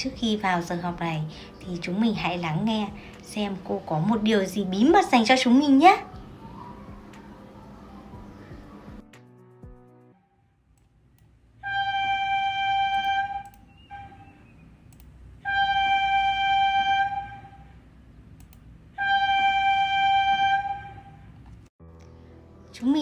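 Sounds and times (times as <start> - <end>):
train whistle blasts: 11.6 - 14.4, 15.4 - 17.8, 19.0 - 21.4.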